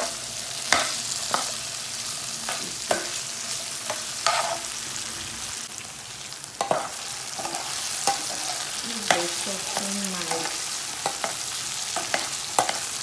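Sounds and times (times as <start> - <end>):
spoon scraping a pan: 0.0 - 1.6, 2.5 - 4.8, 6.6 - 13.0
meat and vegetables sizzling: 0.0 - 13.0.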